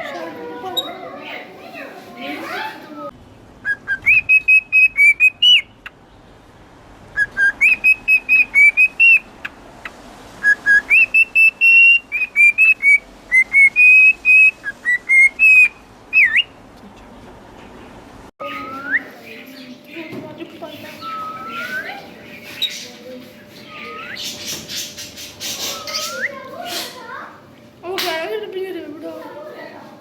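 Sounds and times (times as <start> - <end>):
cockatiel whistling a tune: 3.6 - 5.7, 7.2 - 9.2, 10.4 - 16.5, 18.4 - 19.2, 21.0 - 22.0, 23.8 - 24.4, 25.5 - 26.5.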